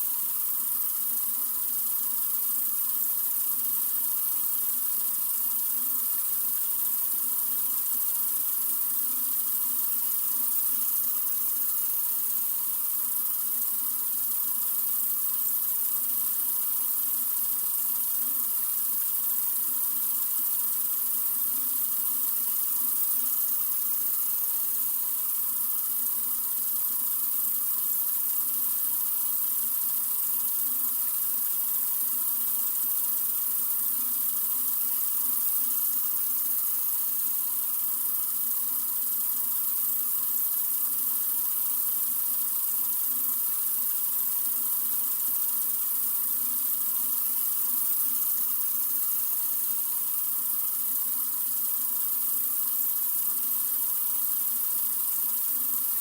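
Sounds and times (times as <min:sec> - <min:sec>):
sink faucet running: 0:00.0 - 0:56.0.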